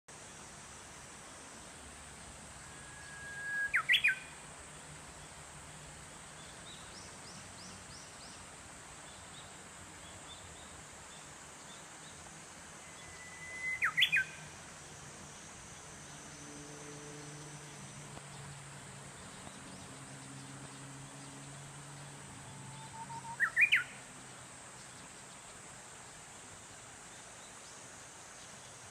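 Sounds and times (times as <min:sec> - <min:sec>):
faint high bird chirps: 0:02.7 - 0:04.4, 0:12.8 - 0:14.5, 0:22.4 - 0:24.0
bush warbler singing: 0:02.9 - 0:14.6, 0:15.2 - 0:28.9.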